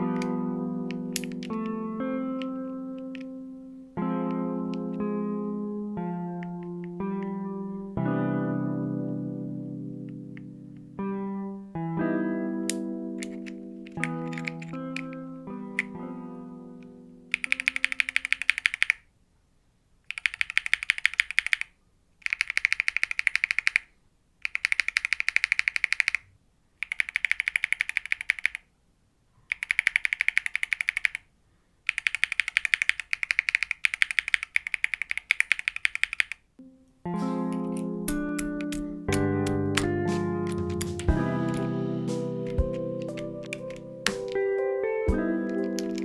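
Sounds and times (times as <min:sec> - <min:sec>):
mechanical keyboard switch clacks: 0:00.0 - 0:03.3, 0:13.2 - 0:15.2, 0:17.3 - 0:19.0, 0:37.5 - 0:44.5, 0:45.5 - 0:46.0
plucked guitar-like music: 0:00.0 - 0:14.2, 0:36.6 - 0:46.0.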